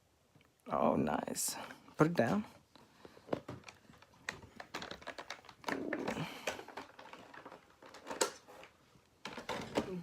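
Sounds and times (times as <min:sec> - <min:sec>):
rustling: 0:02.2 - 0:10.0.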